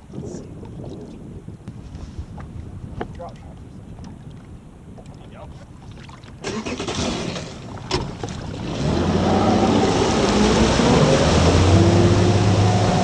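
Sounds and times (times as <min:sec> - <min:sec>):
water rushing past boat: 0:00.0 - 0:13.0
outboard motor running: 0:03.6 - 0:13.0.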